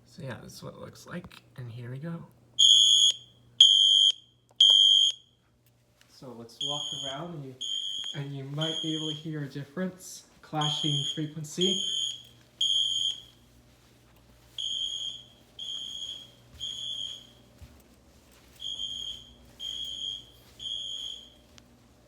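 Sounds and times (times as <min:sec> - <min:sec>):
fire alarm horn beeps: 0:02.6 - 0:05.4, 0:06.6 - 0:09.3, 0:10.6 - 0:13.4, 0:14.6 - 0:17.4, 0:18.6 - 0:21.5.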